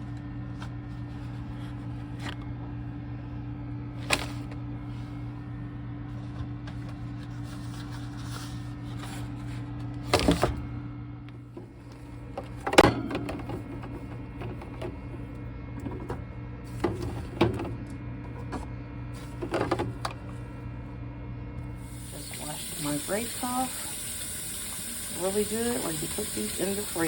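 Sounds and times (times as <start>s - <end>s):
steady low hum: 0.0s - 27.0s
plastic containers clattering: 12.4s - 18.6s.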